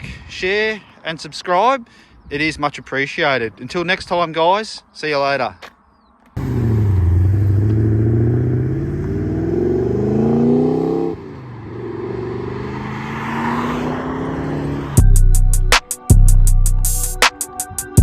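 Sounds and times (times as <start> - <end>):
car engine accelerating hard: 6.4 - 15.0.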